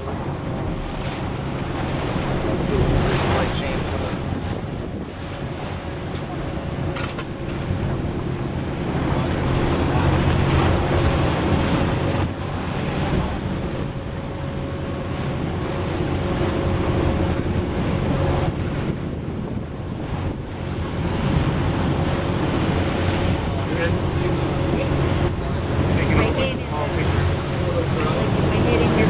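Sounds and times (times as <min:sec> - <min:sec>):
boat engine running: 0:00.0 - 0:29.0
water noise: 0:00.0 - 0:29.0
wind on microphone: 0:00.0 - 0:29.0.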